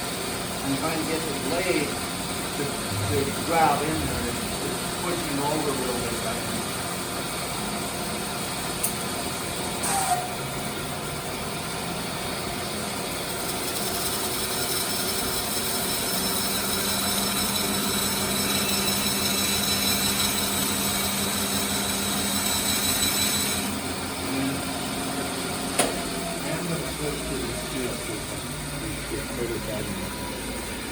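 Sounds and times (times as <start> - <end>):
band saw cutting wood: 2.6 - 6.0.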